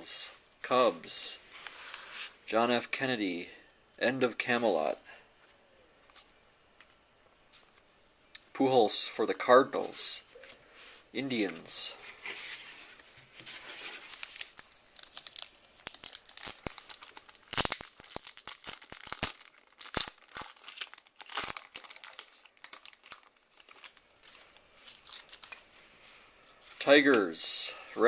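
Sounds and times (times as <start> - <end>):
wrapper tearing and crinkling: 13.5 - 25.7.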